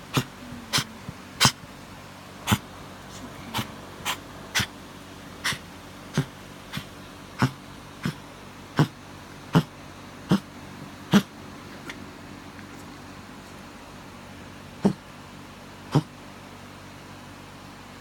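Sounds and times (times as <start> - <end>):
pet coughing: 0.0 - 1.7, 2.4 - 4.8, 5.4 - 10.5, 11.1 - 11.4, 14.8 - 15.1, 15.9 - 16.2.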